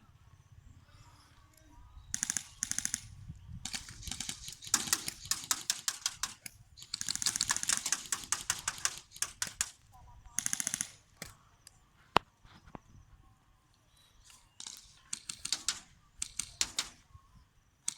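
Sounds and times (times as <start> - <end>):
airsoft guns firing bursts: 2.1 - 11.4, 14.5 - 17.1.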